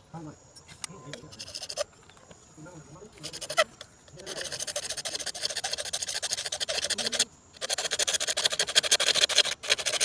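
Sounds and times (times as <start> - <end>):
rapid scraping strokes: 1.2 - 2.0, 3.0 - 10.0.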